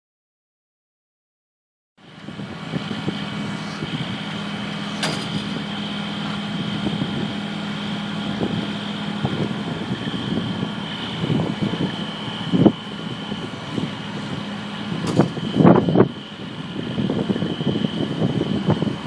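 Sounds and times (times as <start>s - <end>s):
steady high whine: 2.0s - 18.2s
heavy machine engine running: 2.0s - 19.0s
sharp click: 4.9s - 5.7s, 15.1s - 15.5s.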